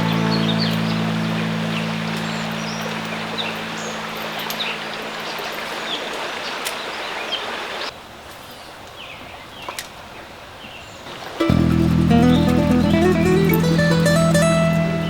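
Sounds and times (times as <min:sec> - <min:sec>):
creek water running: 0:00.0 - 0:07.9, 0:11.0 - 0:15.0.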